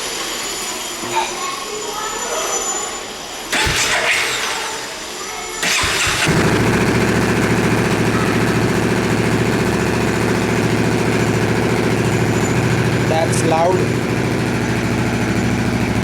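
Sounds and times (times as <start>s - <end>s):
electric starter cranking: 3.5s - 5.0s, 5.6s - 16.0s
motorcycle engine idling: 5.7s - 16.0s.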